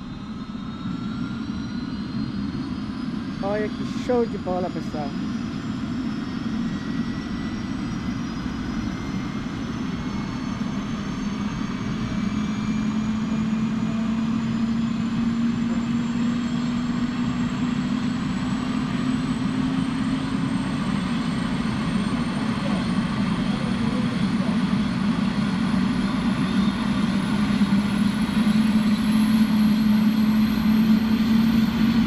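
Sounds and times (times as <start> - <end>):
drone propellers whining: 0.0 - 32.0.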